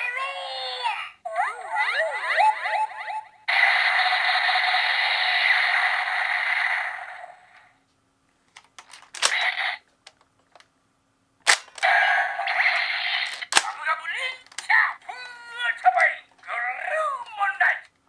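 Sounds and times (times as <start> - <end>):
plastic clicks of toy: 8.5 - 10.7, 11.5 - 12.0, 13.2 - 13.8, 14.4 - 14.7
toy gun hissing sound effect: 9.2 - 9.8, 11.5 - 13.8.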